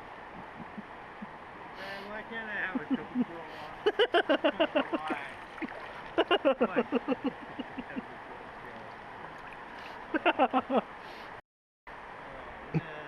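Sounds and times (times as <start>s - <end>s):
man laughing: 0.4s - 0.8s, 2.7s - 5.3s, 6.2s - 8.1s, 10.1s - 10.8s
rushing creek water: 3.3s - 10.2s.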